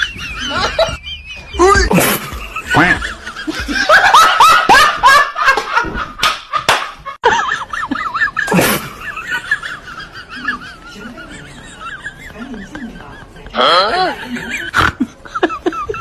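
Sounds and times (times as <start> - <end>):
person giggling: 0.0 - 4.8, 7.2 - 9.2
sharp slaps or knocks: 5.6 - 7.0.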